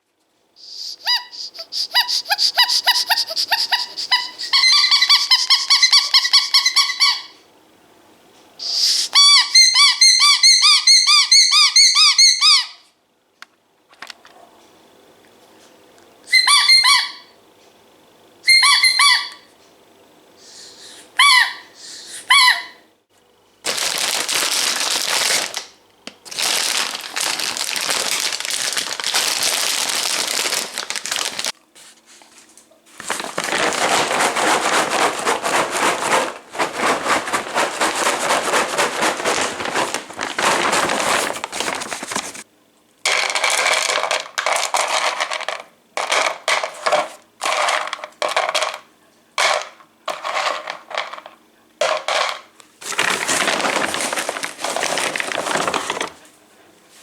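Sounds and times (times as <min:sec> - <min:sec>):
dog squeaky toy squeaking: 0:01.0 - 0:07.3, 0:09.1 - 0:12.8, 0:16.3 - 0:17.2, 0:18.5 - 0:19.4, 0:22.3 - 0:22.8.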